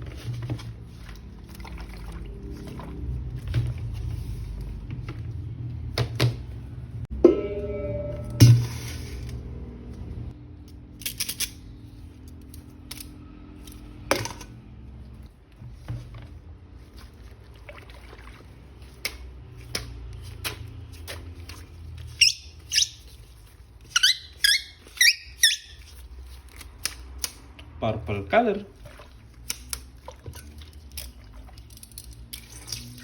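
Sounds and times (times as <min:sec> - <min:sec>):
high squeaky chirps: 0:22.1 - 0:23.1, 0:23.9 - 0:25.9.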